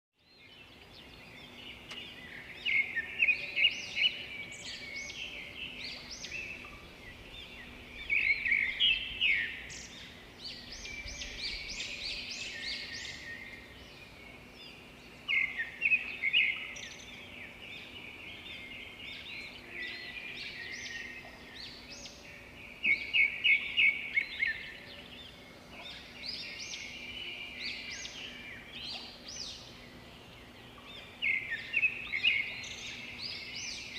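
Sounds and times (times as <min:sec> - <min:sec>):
songbirds chirping and singing: 0:00.2 - 0:33.9.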